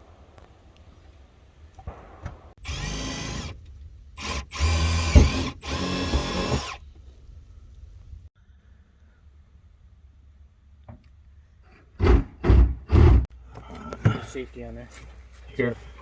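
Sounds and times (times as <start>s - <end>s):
power drill motor running: 2.6s - 3.6s, 4.2s - 6.8s.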